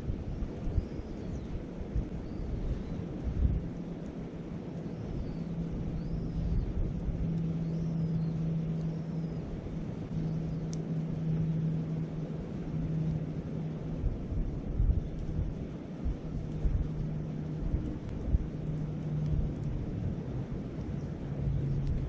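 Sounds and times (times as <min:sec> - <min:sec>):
low hum: 0:00.0 - 0:22.0
wind rumbling on microphone: 0:00.0 - 0:22.0.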